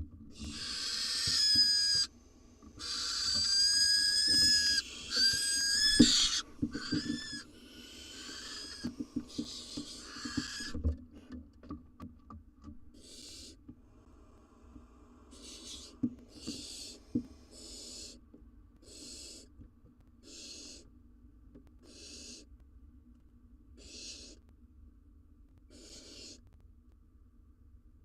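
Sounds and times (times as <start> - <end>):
owl rasping hiss calls: 0.3 - 2.1, 2.7 - 10.8, 13.0 - 13.6, 15.3 - 18.2, 18.8 - 19.5, 20.2 - 20.9, 21.8 - 22.5, 23.8 - 24.4, 25.7 - 26.4.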